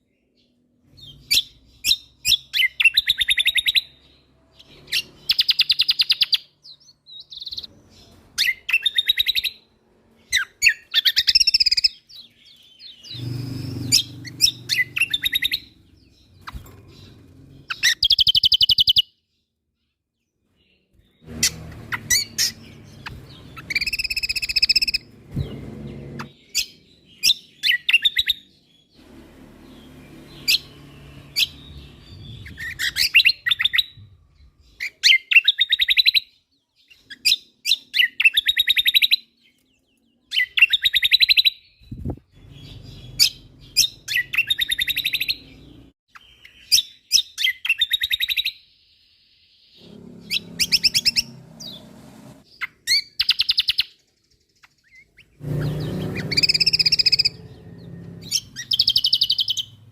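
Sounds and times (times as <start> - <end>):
songbird trilling and chipping: 0.1 - 19.2, 20.6 - 25.6, 52.5 - 59.8.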